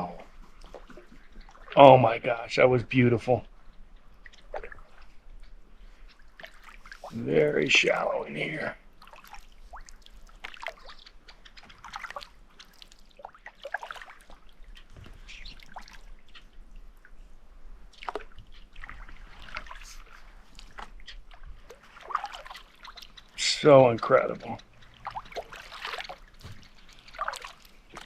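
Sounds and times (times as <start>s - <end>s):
water dripping off paddle: 3.5s - 8.2s, 8.9s - 17.2s, 17.9s - 28.0s
paddle splashing in water: 4.1s - 5.2s, 6.0s - 7.3s, 8.9s - 17.2s, 17.9s - 23.4s, 24.0s - 28.0s.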